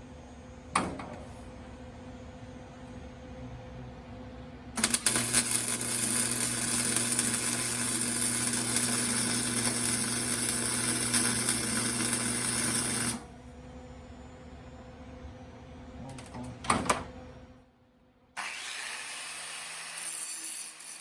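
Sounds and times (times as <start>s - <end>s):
low electrical hum: 0.0s - 18.4s
arc welding sizzling crackle: 4.8s - 13.3s, 18.4s - 21.0s.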